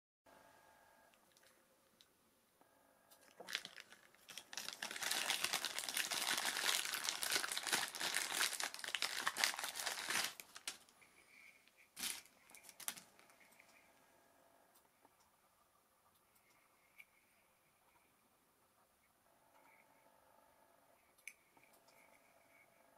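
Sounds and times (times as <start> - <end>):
plastic packaging crinkling: 3.3 - 11.0, 11.6 - 13.4.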